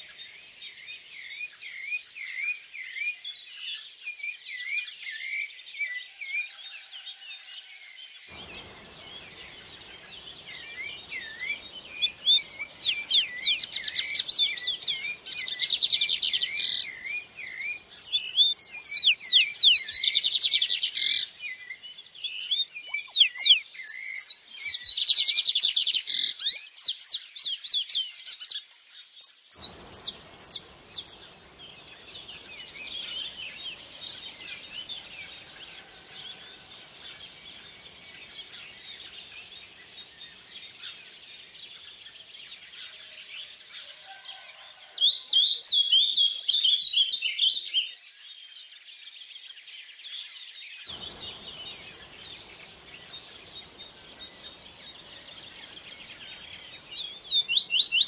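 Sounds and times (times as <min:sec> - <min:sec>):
songbirds singing: 0:00.0 - 0:58.0
running stream water: 0:08.3 - 0:26.6, 0:29.6 - 0:43.4, 0:50.9 - 0:58.0
distant bird chatter: 0:08.3 - 0:44.9, 0:50.9 - 0:58.0.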